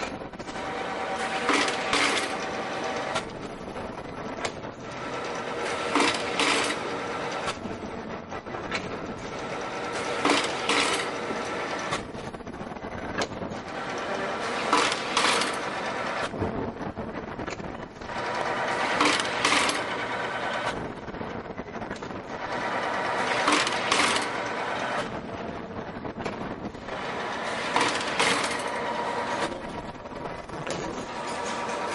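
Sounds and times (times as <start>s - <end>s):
machine clattering and clicks: 0.0s - 31.9s
machine mechanical hum: 0.0s - 31.9s.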